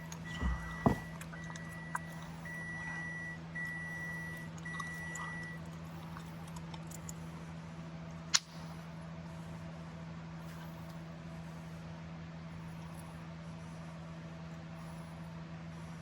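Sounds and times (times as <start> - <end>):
steady low hum: 0.0 - 16.0
electronic warning beeps: 0.1 - 5.6
short knocks: 0.4 - 1.2.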